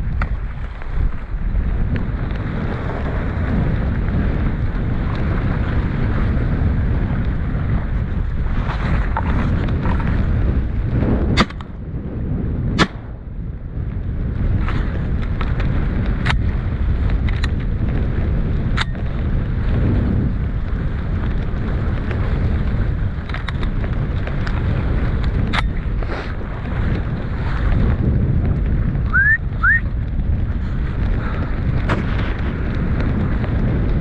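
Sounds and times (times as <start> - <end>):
wind buffeting microphone: 0.0 - 34.0
shotgun shots: 12.8 - 13.2.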